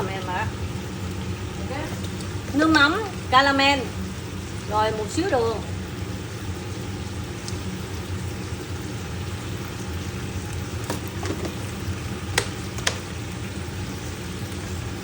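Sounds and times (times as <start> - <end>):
pork sizzling in a pan: 0.0 - 15.0.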